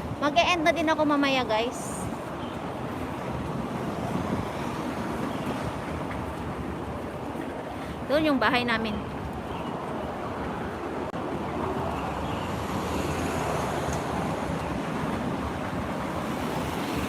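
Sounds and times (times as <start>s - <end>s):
street traffic noise: 0.0s - 17.0s
wind on microphone: 0.0s - 17.0s.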